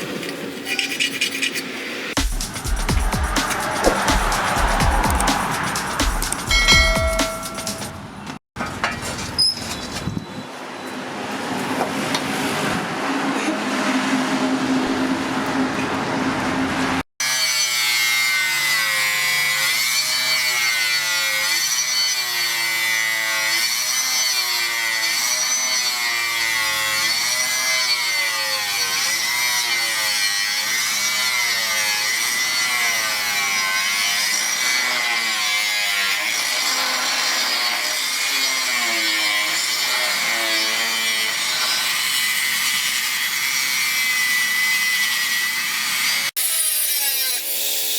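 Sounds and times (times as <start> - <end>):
saw blade steel being cut: 0.7 - 8.0, 17.2 - 47.9.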